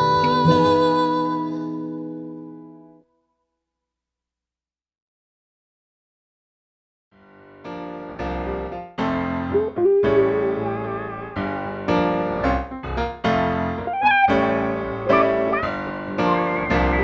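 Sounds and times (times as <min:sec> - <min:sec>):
electric piano chords: 0:07.6 - 0:17.0
wavering melody line: 0:13.9 - 0:17.0.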